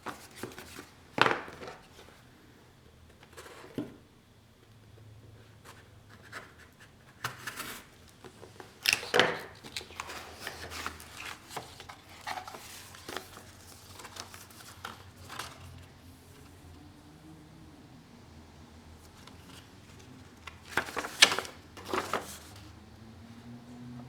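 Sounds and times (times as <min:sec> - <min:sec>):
packaging being handled: 0:07.4 - 0:15.9, 0:19.2 - 0:22.7.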